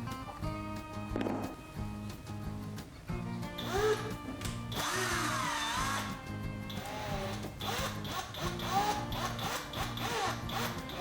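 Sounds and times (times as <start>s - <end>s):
background music with beat: 0.0s - 11.0s
electric power tool whining: 3.6s - 11.0s.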